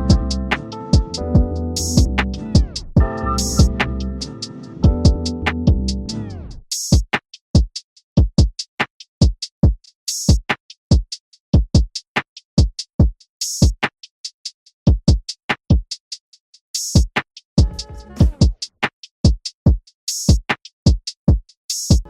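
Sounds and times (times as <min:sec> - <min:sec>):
electronic drum-machine beat: 0:00.0 - 0:08.6, 0:16.8 - 0:18.7, 0:19.7 - 0:22.0.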